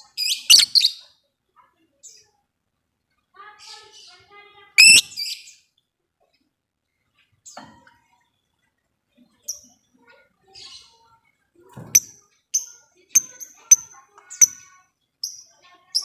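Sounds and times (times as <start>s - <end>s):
lovebirds chirping: 0.2s - 1.1s, 4.8s - 5.7s.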